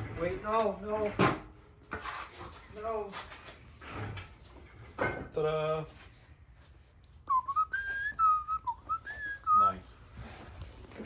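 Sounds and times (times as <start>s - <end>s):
person whistling a tune: 7.2s - 9.9s.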